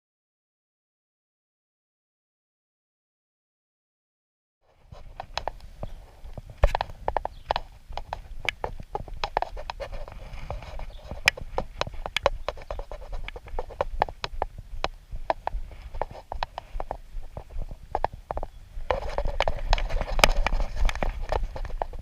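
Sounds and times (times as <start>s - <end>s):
irregular clicks and knocks: 4.9s - 22.0s.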